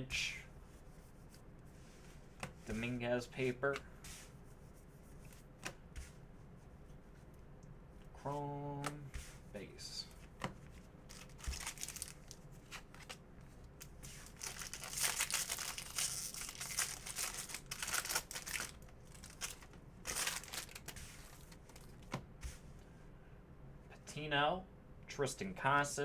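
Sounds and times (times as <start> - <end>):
foil wrapper tearing and crinkling: 11.1 - 12.4, 14.2 - 22.0.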